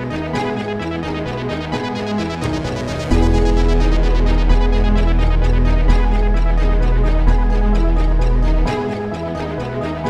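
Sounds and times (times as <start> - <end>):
electronic instrumental music: 0.0 - 10.0.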